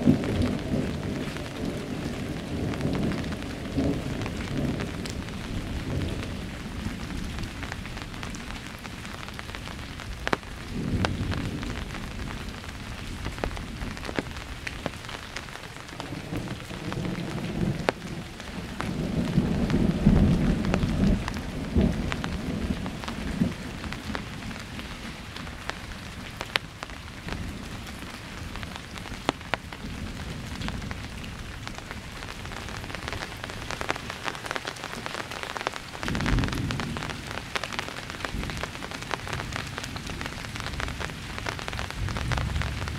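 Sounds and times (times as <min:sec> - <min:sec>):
rolling thunder: 0:00.0 - 0:08.9, 0:16.0 - 0:25.1, 0:36.0 - 0:42.9
sharp taps of raindrops: 0:00.0 - 0:42.9
steady rain falling: 0:00.0 - 0:42.9.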